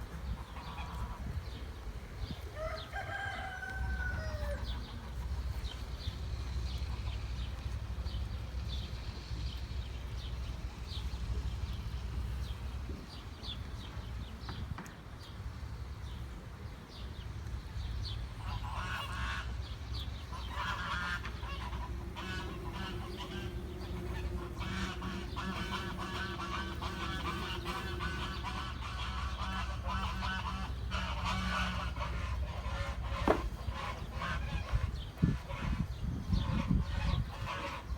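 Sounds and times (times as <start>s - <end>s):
poultry calling: 0.2s - 1.7s, 18.4s - 37.9s
steady low rumble: 17.6s - 37.5s.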